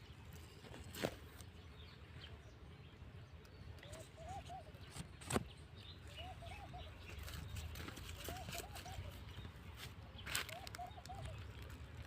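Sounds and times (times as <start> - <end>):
bird calling low notes: 3.8 - 5.3, 6.0 - 9.6, 10.3 - 11.8.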